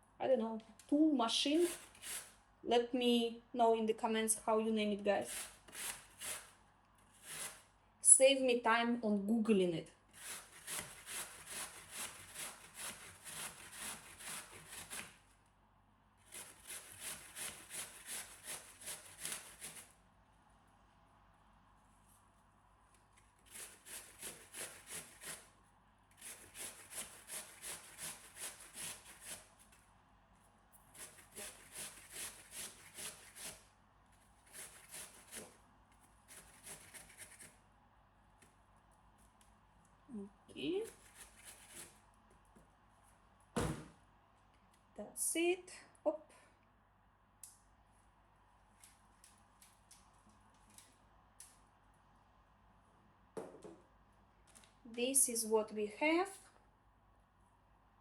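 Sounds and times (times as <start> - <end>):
apple rasping on shredder: 1.5 - 2.4, 5.2 - 7.7, 10.1 - 15.3, 16.2 - 20.0, 23.0 - 29.8, 30.8 - 37.6.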